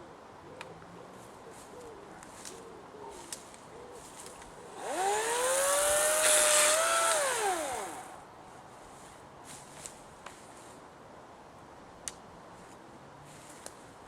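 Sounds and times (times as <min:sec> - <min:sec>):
electric chainsaw whining: 0:04.8 - 0:08.2.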